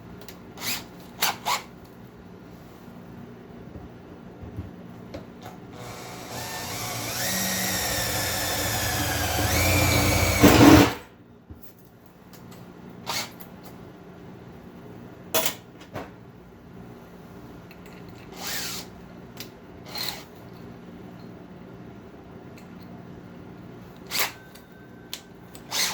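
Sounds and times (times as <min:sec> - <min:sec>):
electric drill drilling: 0:05.8 - 0:11.0.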